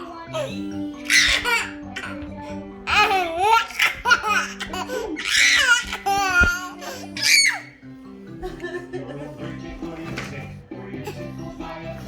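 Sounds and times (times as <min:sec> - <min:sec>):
children's song playing quietly: 0:00.0 - 0:12.0
young child laughing: 0:02.9 - 0:07.6.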